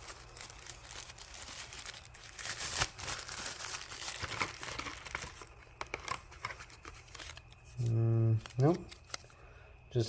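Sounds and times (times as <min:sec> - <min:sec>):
packaging crinkling and rustling: 0:00.0 - 0:09.4.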